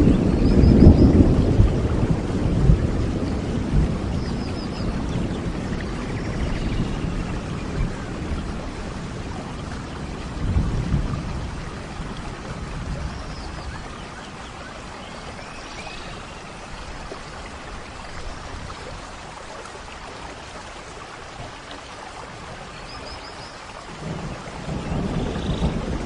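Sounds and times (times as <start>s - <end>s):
rolling thunder: 0.0s - 13.9s, 23.9s - 26.0s
steady rain: 0.0s - 26.0s.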